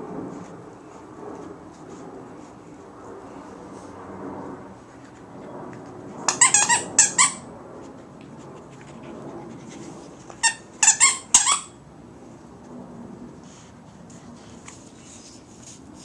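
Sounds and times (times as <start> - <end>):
squeaky toy squeaking: 6.3 - 7.4, 10.4 - 11.8.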